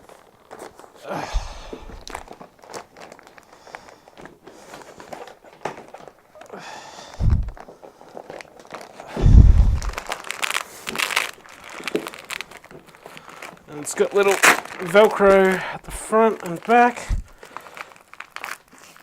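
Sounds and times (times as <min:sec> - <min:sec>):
canvas cover rustling: 0:00.0 - 0:19.0
dull low thumps: 0:01.3 - 0:02.3, 0:07.2 - 0:07.6, 0:09.2 - 0:10.1, 0:17.0 - 0:17.4.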